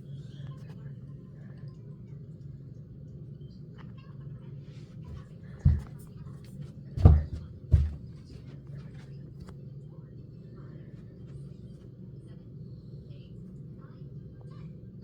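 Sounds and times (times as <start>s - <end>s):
dull thumps: 5.1s - 8.5s.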